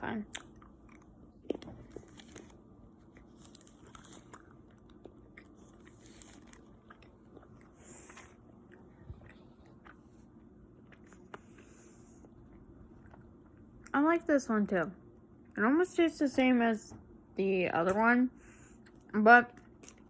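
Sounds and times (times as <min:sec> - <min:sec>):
person chewing: 0:00.2 - 0:13.9.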